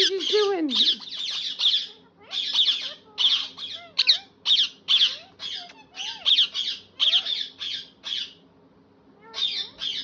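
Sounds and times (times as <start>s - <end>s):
parakeet squawking: 0.0s - 8.5s, 9.2s - 10.0s.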